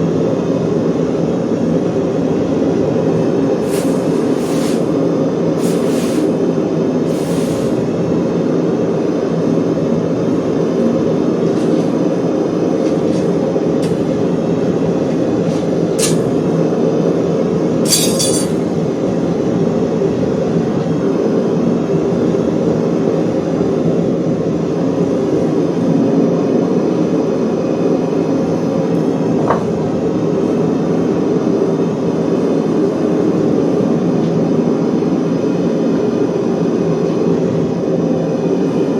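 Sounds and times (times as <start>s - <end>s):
workshop machine noise: 2.1s - 8.5s, 10.8s - 20.2s
metallic clinks: 17.9s - 18.6s.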